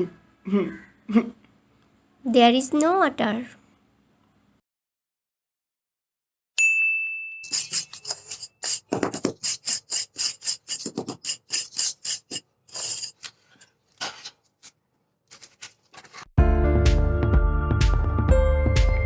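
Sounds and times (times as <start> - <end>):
ringing bell-like tone: 6.6 - 8.1
hard objects clinking on glass: 7.4 - 13.3.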